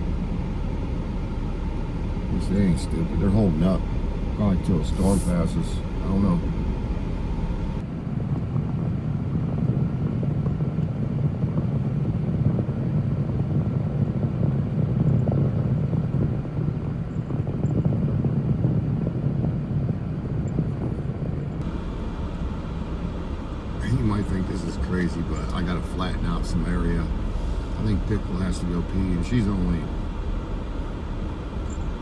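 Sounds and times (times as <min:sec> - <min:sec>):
vehicle engine idling: 0:00.0 - 0:07.8, 0:20.6 - 0:32.0.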